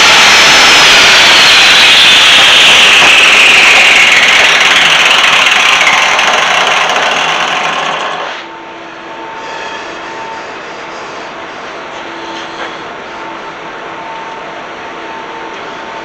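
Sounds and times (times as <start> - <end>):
power tool whine winding down: 0.0 - 8.4.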